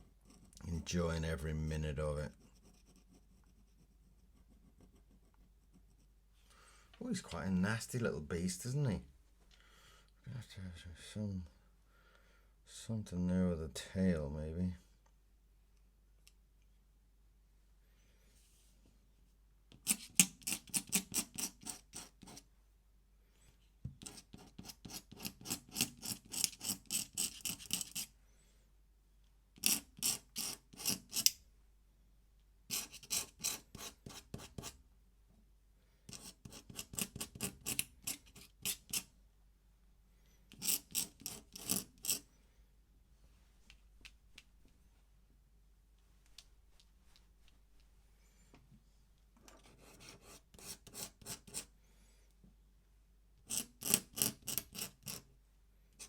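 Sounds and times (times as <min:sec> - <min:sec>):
pen scratching on paper: 0:02.3 - 0:06.2, 0:19.7 - 0:22.4, 0:23.9 - 0:28.1, 0:29.6 - 0:31.3, 0:32.7 - 0:34.8, 0:36.1 - 0:39.1, 0:40.5 - 0:42.2, 0:49.6 - 0:51.7, 0:53.4 - 0:55.3.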